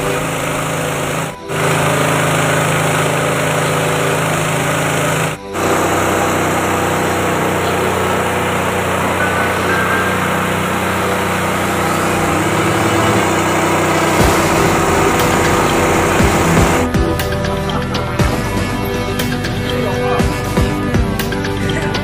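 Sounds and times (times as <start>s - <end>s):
rice polishing machine running: 0.0s - 17.1s.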